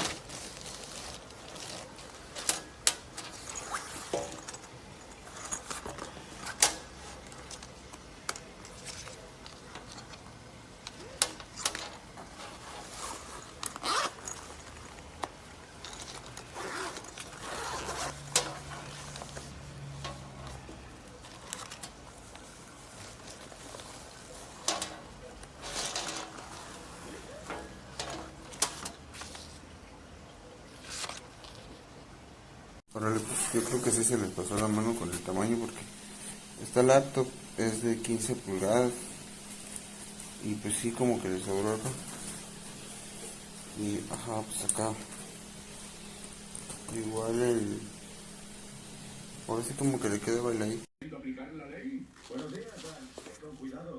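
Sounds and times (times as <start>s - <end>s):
fabric rustling: 0.0s - 7.6s, 8.6s - 32.5s, 52.1s - 53.9s
zip rasping: 11.0s - 29.6s.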